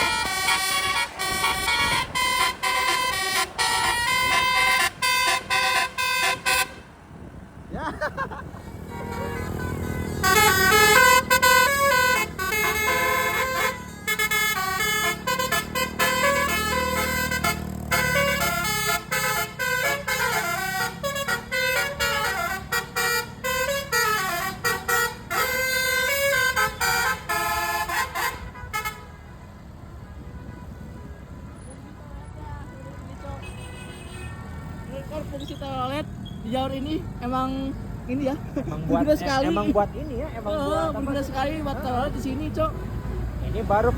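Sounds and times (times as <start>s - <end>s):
bus air horn melody: 0.0s - 7.2s, 8.7s - 31.8s, 32.6s - 34.8s
low engine rumble: 0.0s - 33.6s.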